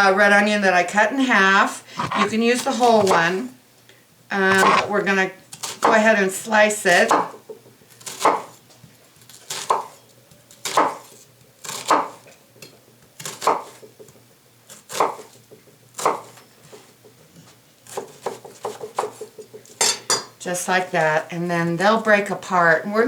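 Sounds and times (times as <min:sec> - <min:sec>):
knife slicing onion on board: 0:02.0 - 0:03.4, 0:04.5 - 0:05.0, 0:14.8 - 0:15.4, 0:17.8 - 0:19.3.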